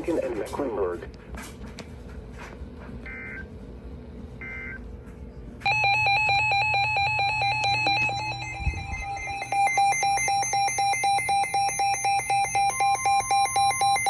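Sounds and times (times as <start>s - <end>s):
two-tone attention signal: 5.7s - 14.0s.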